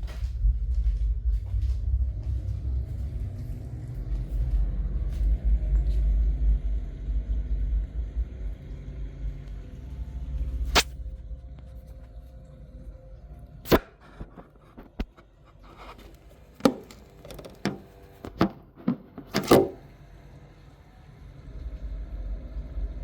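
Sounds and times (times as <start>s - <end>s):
low rumble: 0.0s - 13.6s, 21.4s - 23.0s.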